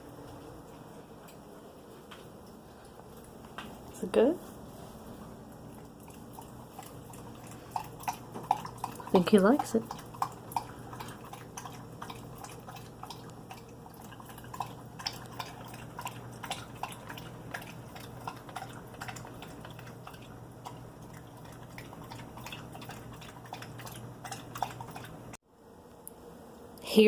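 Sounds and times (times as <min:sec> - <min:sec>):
dog lapping from a bowl: 0:05.4 - 0:25.4.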